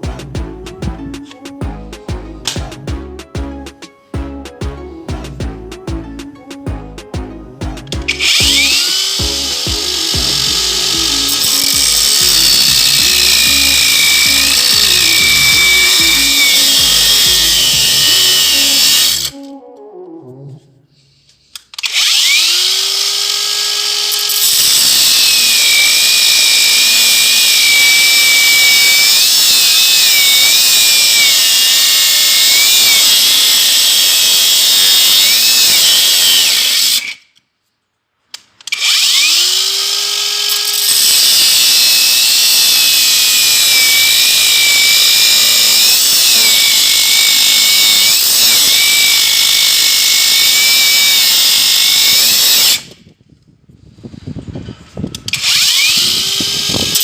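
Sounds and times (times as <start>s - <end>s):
angle grinder whining: 7.9s - 19.6s, 21.5s - 37.4s, 38.4s - 53.0s, 55.1s - 57.0s.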